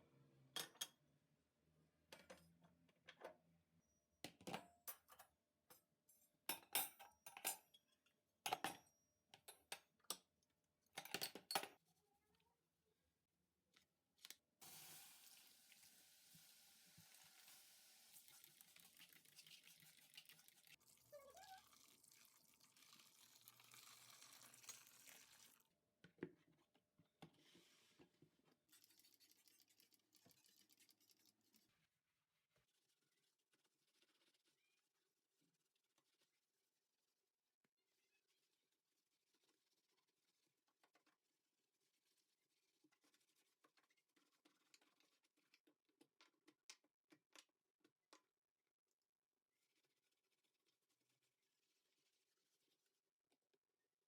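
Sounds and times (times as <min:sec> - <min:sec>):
dishes and utensils clinking: 0:06.5 - 0:07.8.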